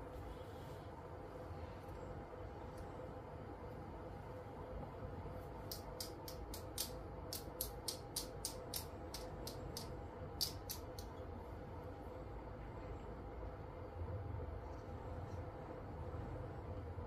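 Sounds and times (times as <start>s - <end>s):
steady faint hum: 0.0s - 17.0s
small hand tools clicking: 5.7s - 11.1s.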